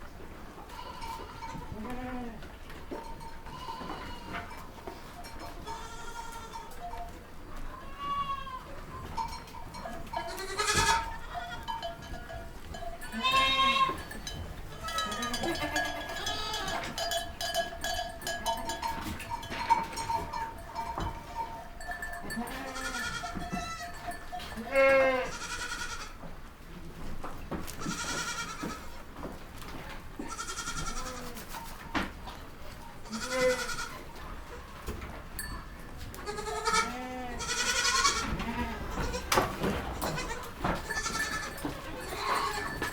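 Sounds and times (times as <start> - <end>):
goats bleating: 0.7 - 2.4, 3.4 - 4.6, 5.6 - 6.7, 7.7 - 8.8, 10.0 - 12.3, 13.0 - 17.6, 22.0 - 26.2, 27.8 - 28.9, 30.2 - 31.5, 33.0 - 34.1, 36.2 - 42.9.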